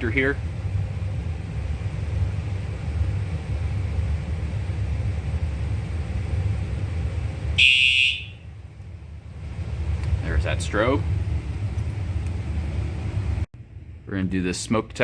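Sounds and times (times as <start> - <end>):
steady low rumble: 0.0 - 15.0
fire alarm horn blast: 7.6 - 8.5.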